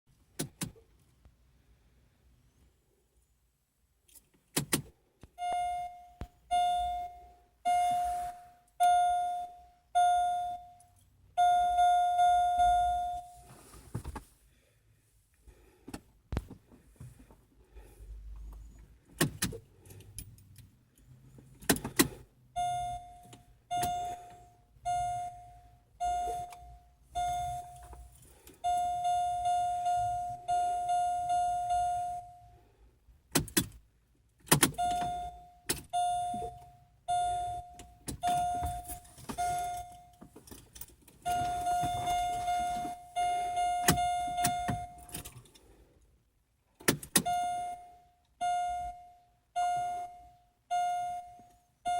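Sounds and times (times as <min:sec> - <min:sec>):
car warning chime beeping: 0:05.3 - 0:13.5, 0:21.5 - 0:32.6, 0:34.5 - 0:45.3, 0:47.0 - 0:51.9
key and ignition clicks: 0:18.5 - 0:22.2, 0:34.4 - 0:36.6, 0:37.2 - 0:45.7, 0:46.8 - 0:49.0.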